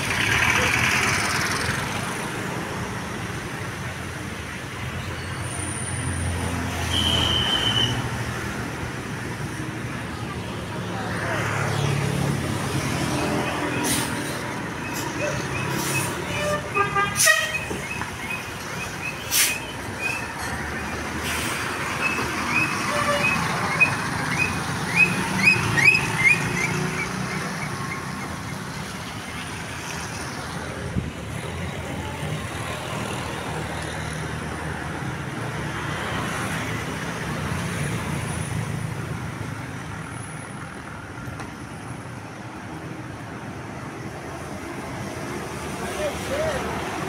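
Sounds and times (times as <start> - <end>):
bus engines rumbling: 0.0 - 47.0.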